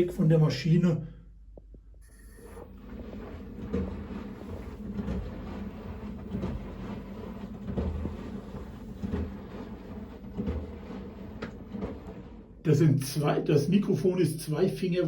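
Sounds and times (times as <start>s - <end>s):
washing machine low rumble: 0.0s - 15.0s
soft knocks of turning drum: 2.6s - 12.7s.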